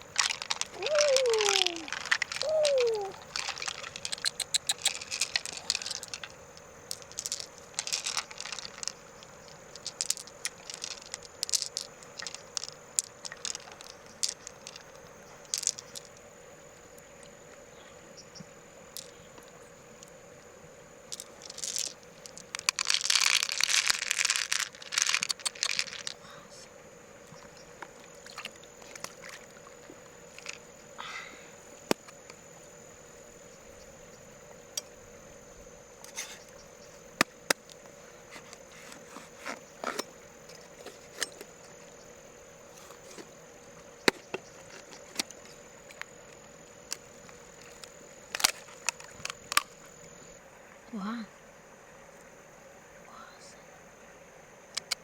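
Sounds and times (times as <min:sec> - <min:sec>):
shells clicking and crackling: 0:00.0 - 0:14.9, 0:21.1 - 0:26.2
faint steady hum: 0:00.0 - 0:55.0.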